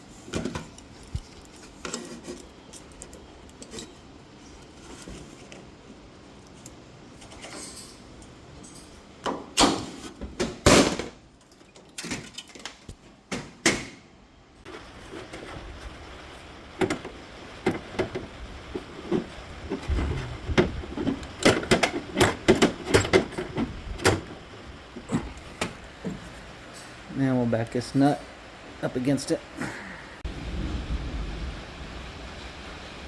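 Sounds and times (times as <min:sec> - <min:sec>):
hand tools clinking: 0:00.4 - 0:04.1.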